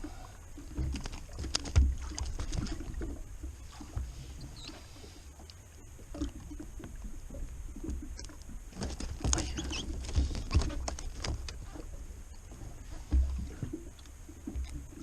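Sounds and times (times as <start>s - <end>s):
fishing tackle clicks and squeaks: 8.2s - 11.6s.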